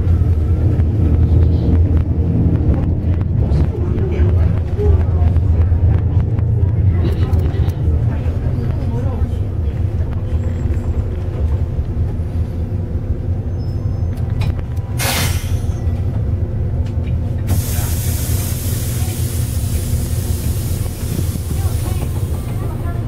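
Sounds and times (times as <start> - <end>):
bus engine running: 0.0 - 23.0
air brake hiss: 15.0 - 15.8.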